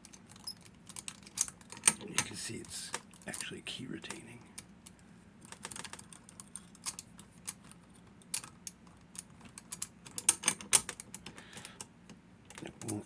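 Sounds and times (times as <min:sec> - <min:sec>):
padlock metal clicks and snaps: 0:08.2 - 0:11.4.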